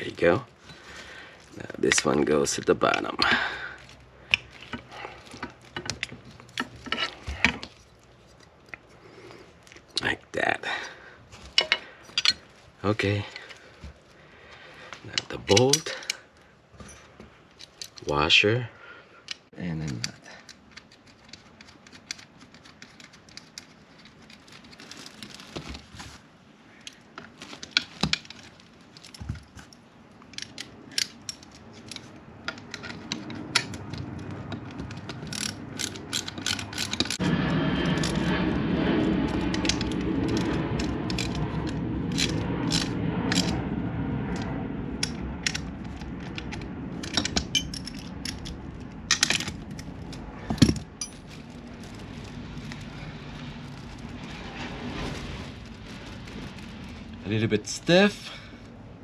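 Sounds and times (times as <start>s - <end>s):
metal hardware clinking: 11.5s - 12.5s, 15.1s - 16.2s, 46.2s - 51.3s
steady rushing noise: 32.0s - 59.0s.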